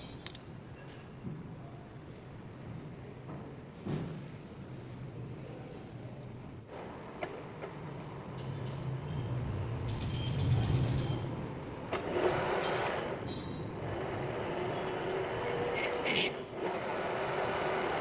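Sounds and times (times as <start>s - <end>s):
metal lathe humming: 12.0s - 18.0s.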